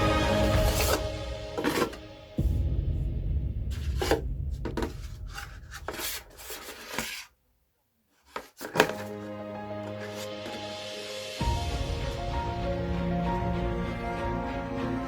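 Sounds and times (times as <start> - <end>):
background music: 0.0 - 5.5, 8.8 - 15.0
rubbing and scraping handling noises: 0.3 - 2.0, 3.7 - 7.4, 8.1 - 10.8
low rumble: 0.7 - 5.8.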